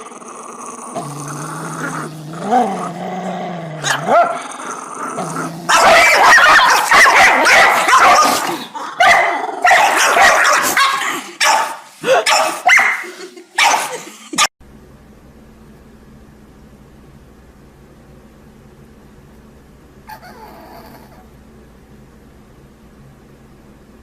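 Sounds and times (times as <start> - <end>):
dog barking and growling: 0.0 - 14.5.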